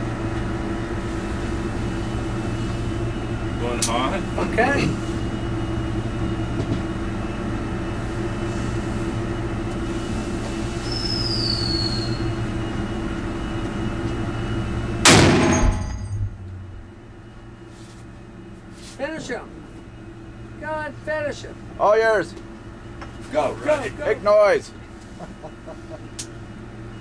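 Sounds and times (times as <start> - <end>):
droning hum: 0.0 - 27.0
rifle shot: 15.1 - 16.0.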